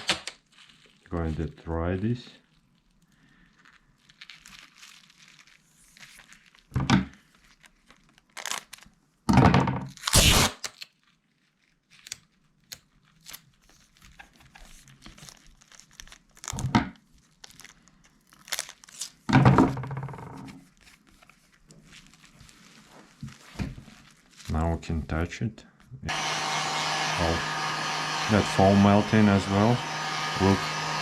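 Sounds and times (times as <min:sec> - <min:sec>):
tape ripping off roll: 0:00.0 - 0:01.3, 0:04.2 - 0:21.1
tape crinkling: 0:00.0 - 0:09.0, 0:09.9 - 0:19.3, 0:20.1 - 0:24.6.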